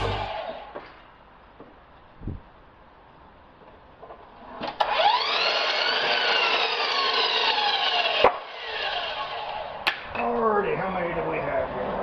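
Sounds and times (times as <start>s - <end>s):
miter saw motor whining: 0.0s - 0.8s, 4.8s - 9.8s.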